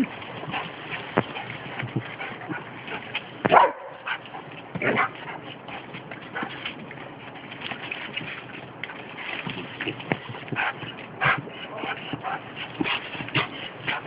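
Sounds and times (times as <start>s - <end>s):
dog barking: 3.5s - 4.1s.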